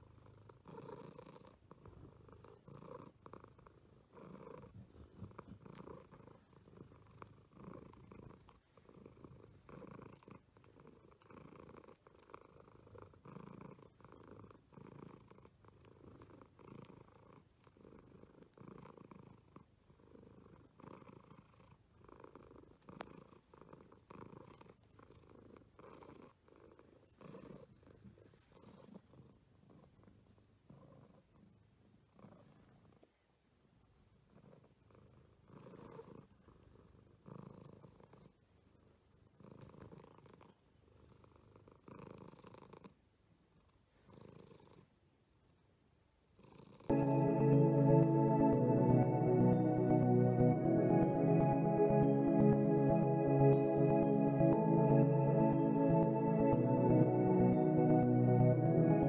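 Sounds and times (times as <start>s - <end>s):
cat snoring softly: 0.0s - 33.3s, 33.9s - 45.6s, 46.3s - 46.9s.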